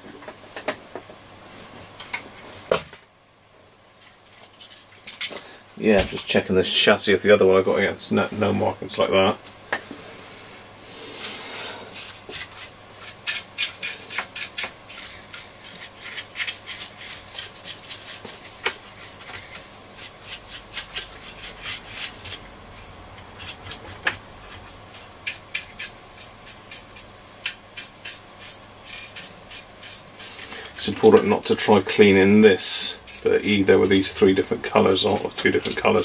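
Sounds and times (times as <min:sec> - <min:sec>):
brush scrubbing metal: 0:11.1 - 0:22.5, 0:23.4 - 0:27.1, 0:27.7 - 0:31.4, 0:32.5 - 0:36.0.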